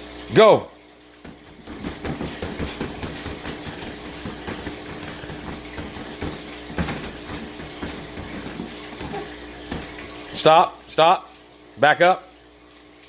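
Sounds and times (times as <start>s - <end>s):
boxing gloves hitting pads: 1.3s - 10.0s.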